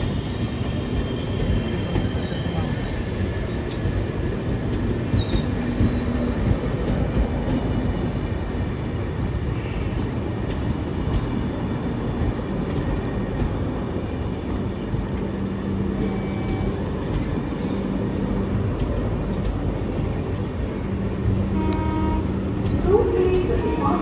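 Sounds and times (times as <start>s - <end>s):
train wheel squeals: 0.0s - 7.0s, 14.5s - 18.1s
train rumbling on rails: 0.0s - 24.0s.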